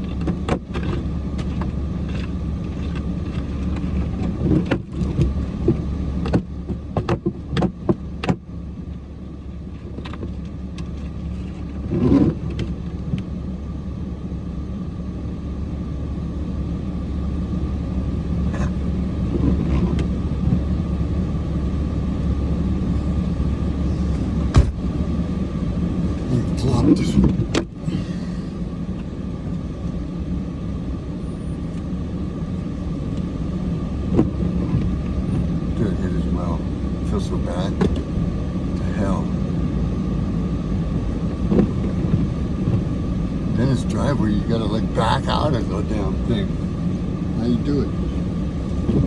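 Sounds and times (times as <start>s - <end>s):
diesel engine running: 0.0s - 49.0s
loud thump: 24.2s - 25.0s.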